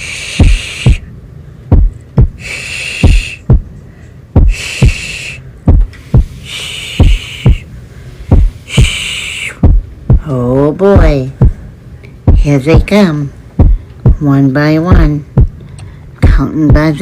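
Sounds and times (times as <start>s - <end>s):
heartbeat double thump: 0.4s - 1.1s, 1.7s - 2.4s, 3.0s - 3.7s, 4.4s - 5.1s, 5.7s - 6.3s, 7.0s - 7.7s, 8.3s - 9.0s, 9.6s - 11.6s, 12.2s - 12.9s, 13.6s - 15.6s, 16.2s - 17.0s
shushing: 2.3s - 9.7s.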